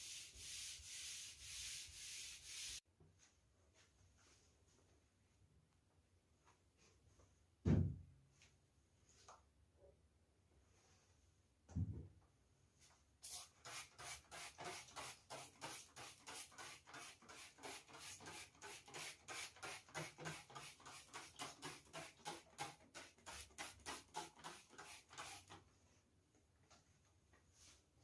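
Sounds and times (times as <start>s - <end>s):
rapid scrubbing strokes: 0.0s - 2.8s.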